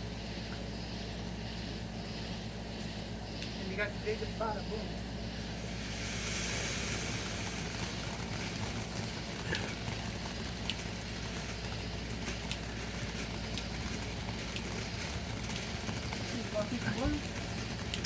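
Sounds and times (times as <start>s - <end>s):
firework hissing and sizzling: 3.6s - 18.0s
sharp crackles: 5.3s - 18.0s.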